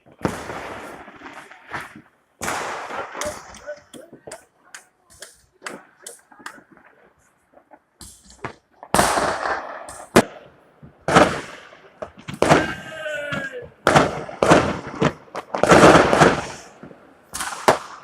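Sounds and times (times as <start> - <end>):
firework bangs: 0.0 - 18.0
firework crackling: 0.0 - 18.0
pitched wail: 12.4 - 13.8.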